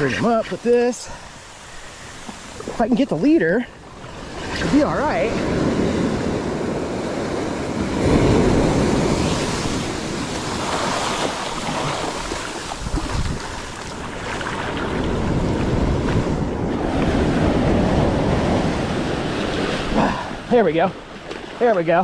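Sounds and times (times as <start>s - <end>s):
ocean surf washing in: 0.0s - 22.0s
wind buffeting microphone: 2.2s - 20.6s.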